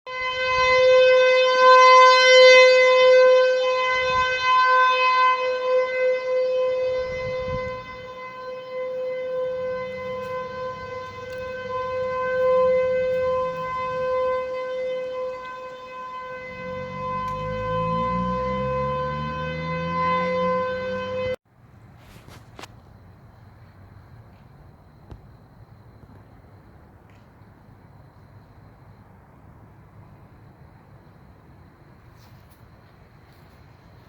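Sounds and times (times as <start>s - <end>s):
warning siren steady tone: 0.1s - 21.4s.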